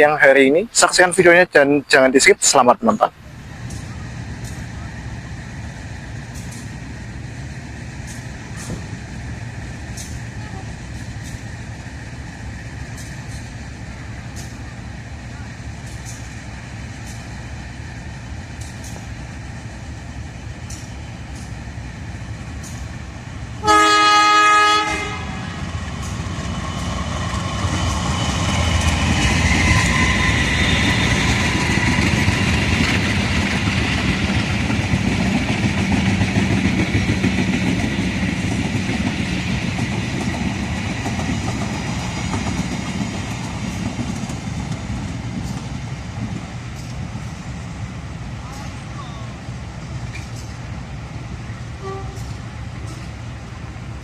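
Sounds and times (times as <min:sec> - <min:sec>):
locomotive engine: 0:00.0 - 0:54.0
train wheels clattering over rail joints: 0:03.6 - 0:04.8, 0:05.9 - 0:14.8, 0:15.7 - 0:23.1, 0:25.7 - 0:47.8, 0:49.7 - 0:54.0
train horn blast: 0:23.6 - 0:25.7, 0:51.8 - 0:52.4.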